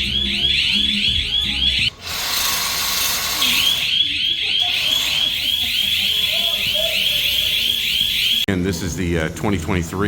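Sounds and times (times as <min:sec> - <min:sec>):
electronic alarm siren chirping: 0:00.0 - 0:02.0, 0:02.7 - 0:08.5.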